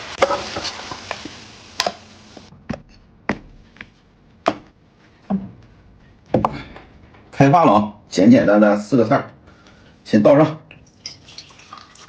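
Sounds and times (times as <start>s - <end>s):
cooking hiss: 0.0s - 2.5s.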